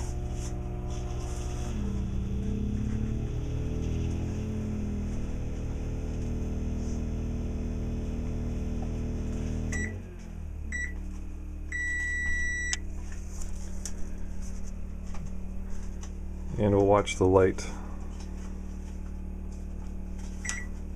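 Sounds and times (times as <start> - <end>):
generator humming: 0.0 - 20.9
microwave oven humming: 0.0 - 20.9
microwave beeps: 9.7 - 10.1, 10.7 - 11.0, 11.7 - 12.9, 20.4 - 20.8.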